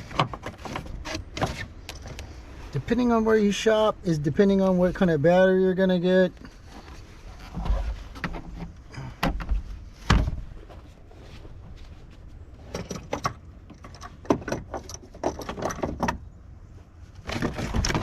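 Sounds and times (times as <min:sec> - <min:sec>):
knocks and light clatter: 0:00.0 - 0:02.4, 0:06.4 - 0:16.4, 0:17.2 - 0:18.0
rattling clicks: 0:12.6 - 0:16.2.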